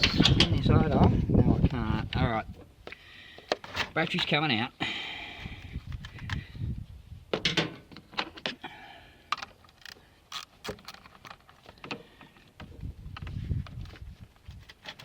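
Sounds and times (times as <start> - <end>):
metallic clicks and knocks: 0.0 - 0.8, 7.3 - 8.6.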